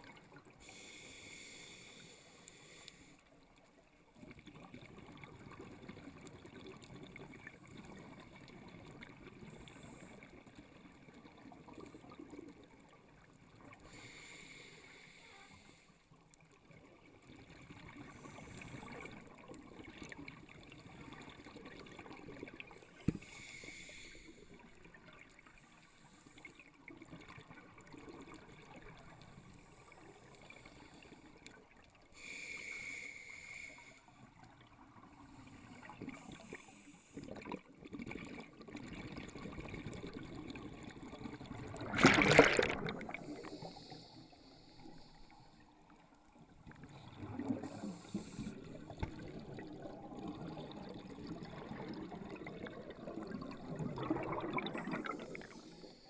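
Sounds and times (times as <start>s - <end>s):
diver breathing through regulator: 0.6s - 3.2s, 13.9s - 16.0s, 23.1s - 24.5s, 32.2s - 34.1s, 42.2s - 45.7s, 47.2s - 48.9s
bubbling rumble: 37.4s - 43.6s, 48.5s - 55.6s.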